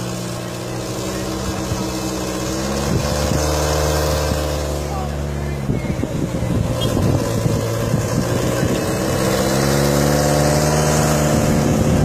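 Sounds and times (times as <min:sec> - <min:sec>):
vehicle engine running: 0:00.0 - 0:12.0
voices in background: 0:04.6 - 0:07.2.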